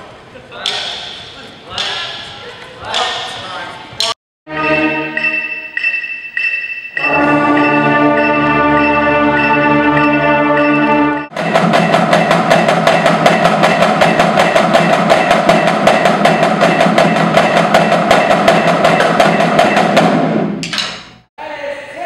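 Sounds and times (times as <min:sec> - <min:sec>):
marching band chord: 0:04.5 - 0:06.2, 0:07.0 - 0:20.6
drumline playing: 0:04.5 - 0:20.8.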